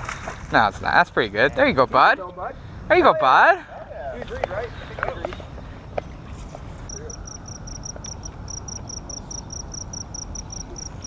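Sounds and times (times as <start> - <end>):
cricket chirping: 6.9 - 11.0.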